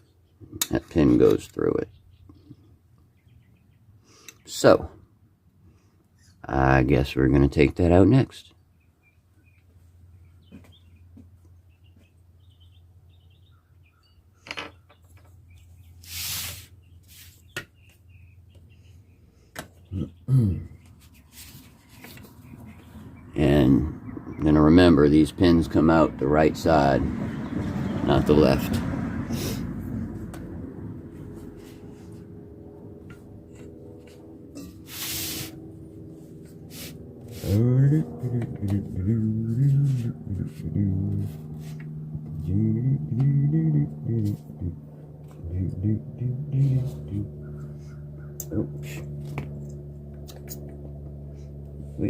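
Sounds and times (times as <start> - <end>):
steady low hum: 15.4 - 52.0
short hiss: 16.0 - 16.7, 34.9 - 35.6
short scraping rush: 16.0 - 17.5, 33.6 - 41.9.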